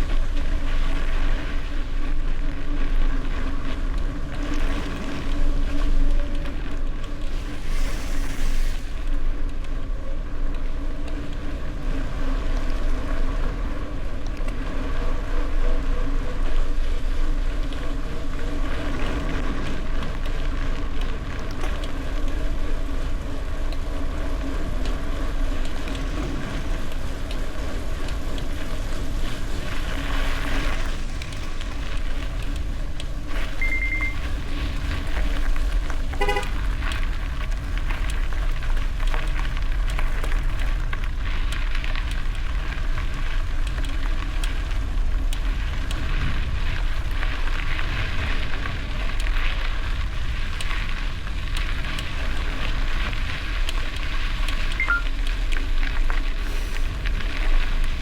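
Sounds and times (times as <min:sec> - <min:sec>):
tyres rolling on road: 0:00.0 - 0:58.0
wind rumbling on microphone: 0:00.0 - 0:58.0
short high beep: 0:33.6 - 0:34.2, 0:54.8 - 0:55.1.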